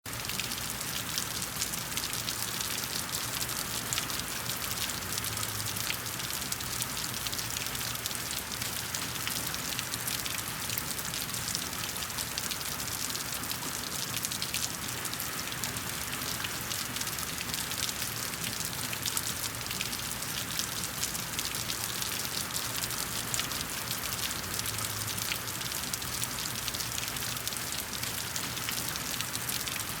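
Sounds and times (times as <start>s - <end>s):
steady rain falling: 0.1s - 30.0s.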